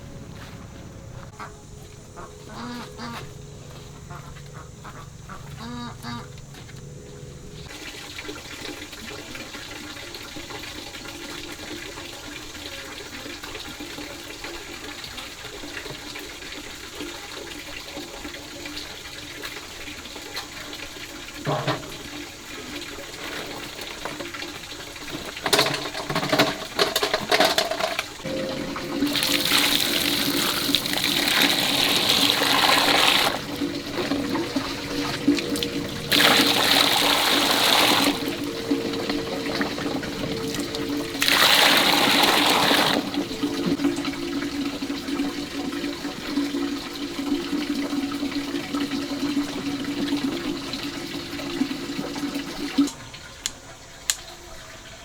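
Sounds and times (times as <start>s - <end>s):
steady low background noise: 0.0s - 7.7s, 28.2s - 46.8s
water splashing and pouring: 6.9s - 53.9s.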